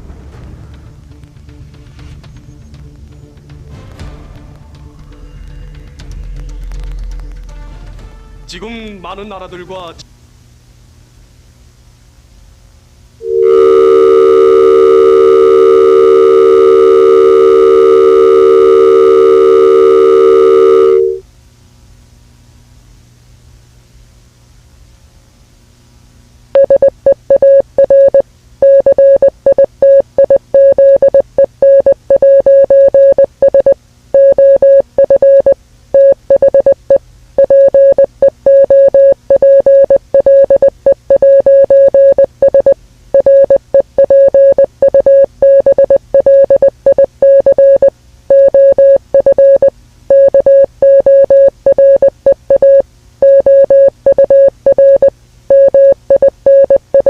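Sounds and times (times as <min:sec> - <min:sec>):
faint static: 0:10.7 - 0:22.2
electronic alert beeps: 0:26.6 - 0:57.0.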